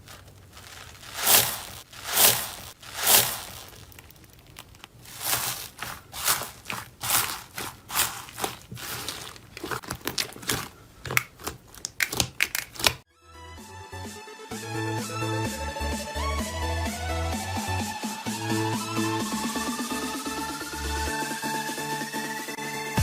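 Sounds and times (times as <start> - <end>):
slime squishing and popping: 0.0 - 13.0.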